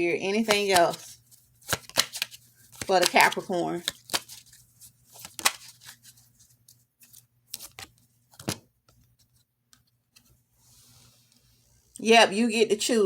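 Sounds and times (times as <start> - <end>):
cards snapping and flicking: 0.4 - 1.0, 1.6 - 4.4, 5.2 - 6.0.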